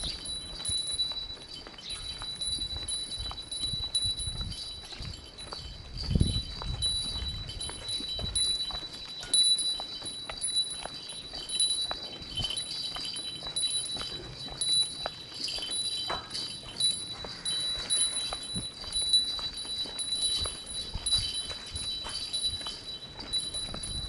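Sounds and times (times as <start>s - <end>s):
footsteps walking: 0.0s - 24.0s
small bell ringing: 0.0s - 24.0s.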